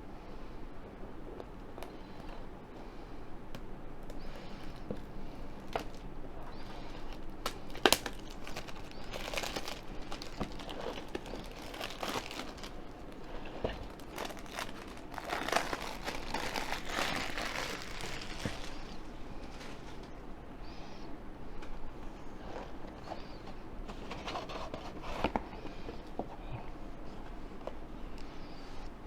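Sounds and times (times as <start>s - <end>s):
packaging crinkling and rustling: 4.0s - 20.2s.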